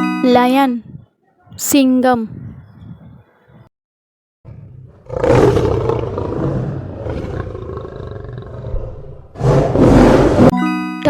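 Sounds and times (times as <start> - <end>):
lion roaring: 4.5 - 10.5.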